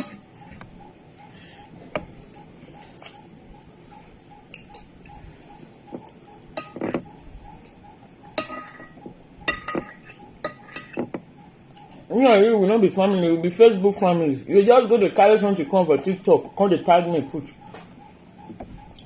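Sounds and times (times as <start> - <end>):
metal spoon scraping a plate: 8.3 - 11.2.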